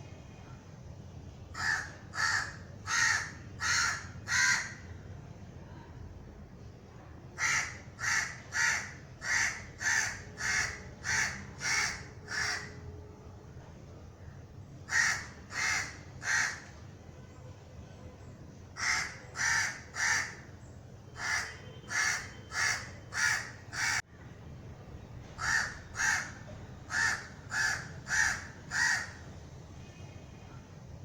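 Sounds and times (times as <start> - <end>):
crow cawing: 1.6 - 4.9, 7.4 - 12.8, 14.9 - 16.7, 18.8 - 20.5, 21.2 - 24.0, 25.4 - 29.3.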